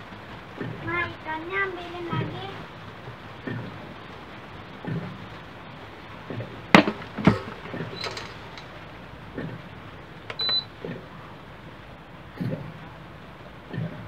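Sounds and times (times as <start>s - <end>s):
rice cooker knocks and clicks: 6.7s - 8.3s.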